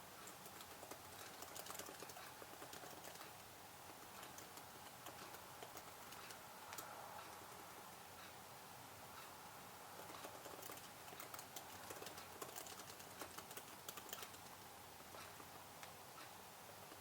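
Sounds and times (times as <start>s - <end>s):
typing on computer keyboard: 0.2s - 3.4s, 4.1s - 6.9s, 10.0s - 14.6s.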